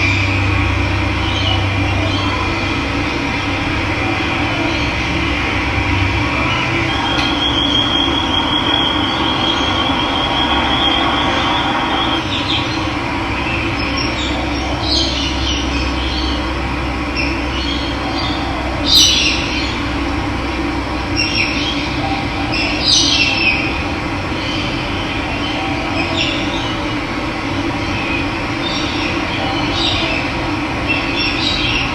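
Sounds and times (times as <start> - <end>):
high pulsing trill: 0.0 - 14.3
bird calls: 6.3 - 12.8.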